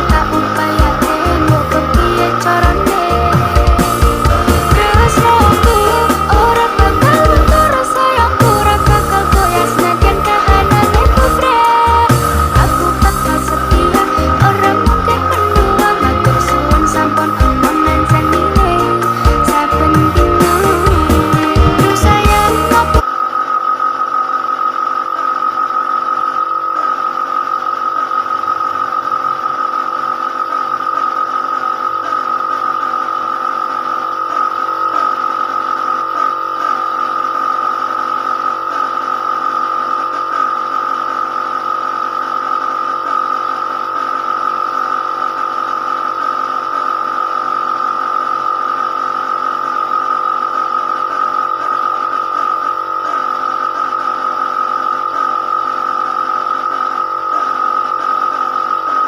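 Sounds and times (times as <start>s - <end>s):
machine whining steadily: 0.0s - 59.0s.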